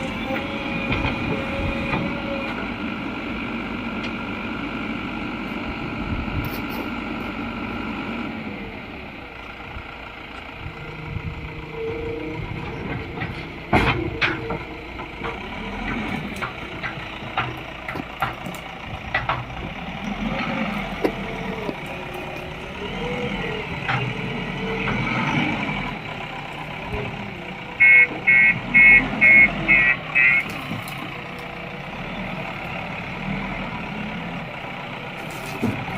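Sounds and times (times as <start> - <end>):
backhoe loader engine running: 0.0 - 35.9
sharp knocks and clanks: 12.8 - 19.8
reversing alarm beeping: 27.8 - 30.5.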